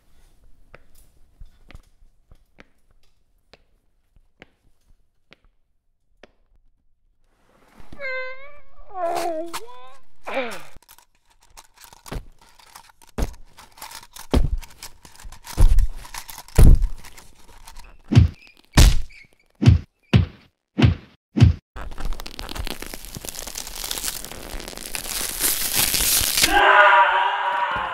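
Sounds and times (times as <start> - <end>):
punch thuds and whacks: 16.6 - 16.9, 18.1 - 21.6.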